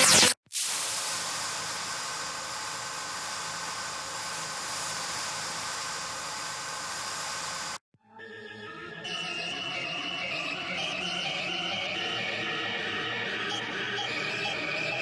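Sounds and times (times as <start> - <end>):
synthesizer hissing noise texture: 0.0 - 7.8.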